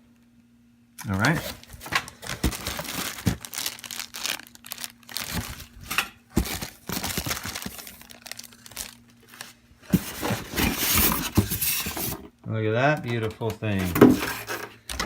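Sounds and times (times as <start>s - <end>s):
packing material crinkling: 1.0s - 12.2s.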